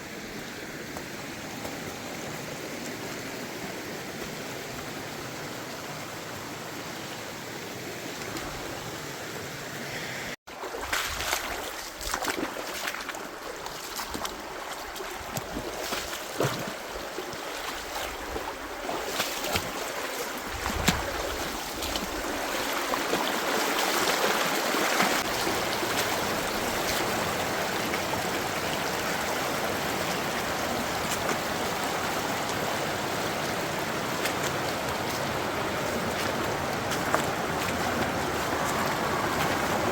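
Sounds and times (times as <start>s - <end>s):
rushing water: 0.0s - 39.9s
water splashes: 10.5s - 39.9s.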